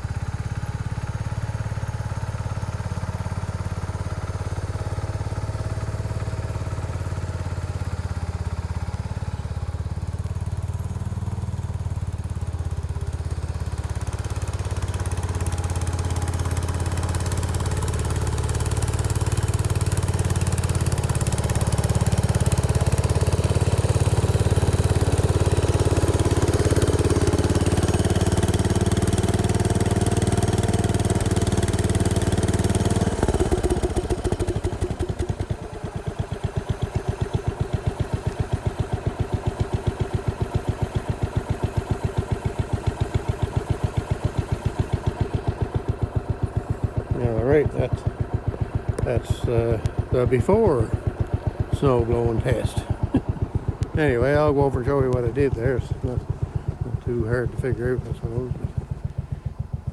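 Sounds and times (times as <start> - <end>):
garden tractor engine running: 0.0 - 59.9.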